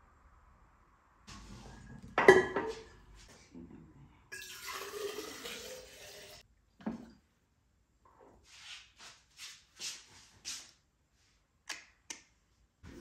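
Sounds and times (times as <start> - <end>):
crockery clinking: 2.2 - 2.9
water running: 4.4 - 6.4.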